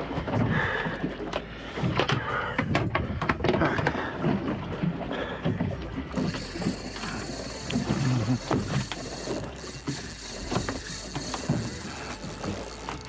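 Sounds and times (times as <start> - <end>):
fishing rod and reel clicking: 5.4 - 13.0
steady high whine: 6.2 - 13.0.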